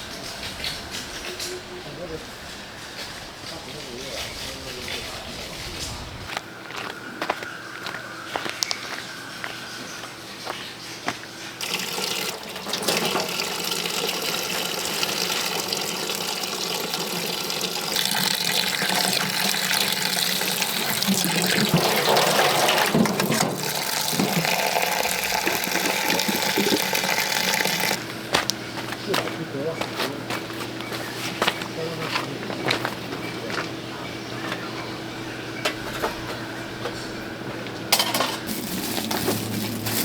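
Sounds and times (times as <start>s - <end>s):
water running from a tap: 11.6s - 28.0s.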